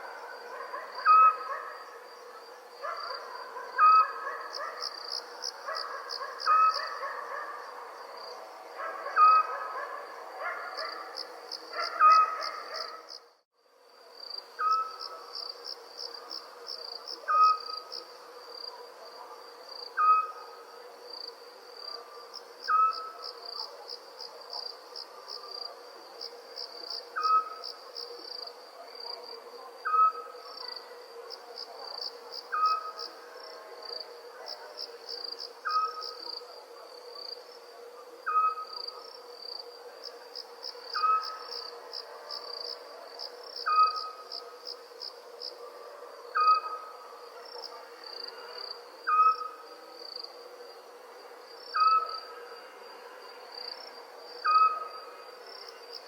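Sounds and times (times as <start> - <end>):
crickets chirping: 0.0 - 56.0
owl hooting: 1.0 - 1.6, 17.3 - 17.8, 20.0 - 20.4, 22.7 - 23.2, 35.6 - 36.1, 38.2 - 38.8, 41.0 - 41.5, 49.1 - 49.6.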